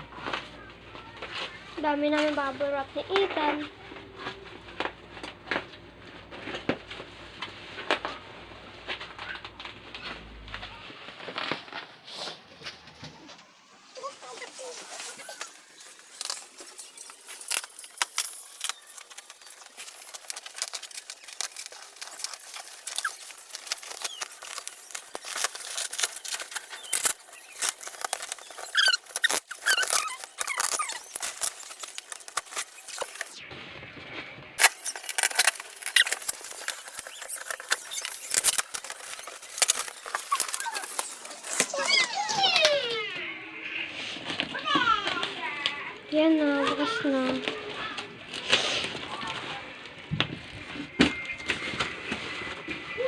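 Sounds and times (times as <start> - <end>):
bubble wrap crackling and rustling: 6.2 - 33.4, 34.6 - 43.1
plastic squeaks: 14.0 - 33.4, 34.6 - 43.2.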